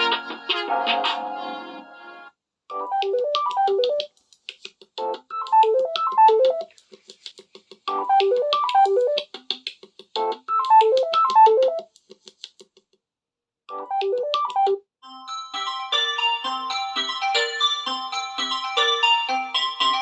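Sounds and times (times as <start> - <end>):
plucked ringtone melody: 2.7 - 4.0, 13.7 - 20.0.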